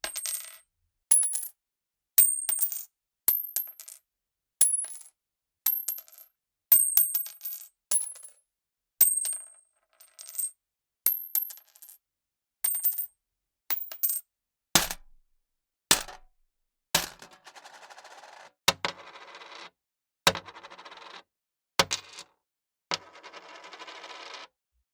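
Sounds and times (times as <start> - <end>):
coins dropping and clinking: 10.2 - 10.5, 12.7 - 13.1, 13.7 - 14.2, 17.0 - 18.5
heavier coin hits: 17.0 - 18.1.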